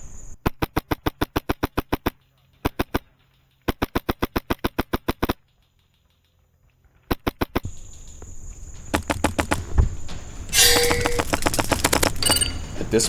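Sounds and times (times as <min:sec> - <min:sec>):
airsoft gun firing bursts: 0:00.3 - 0:05.5, 0:07.0 - 0:12.8
rustling: 0:05.2 - 0:13.0
steady high-pitched tone: 0:10.5 - 0:11.5.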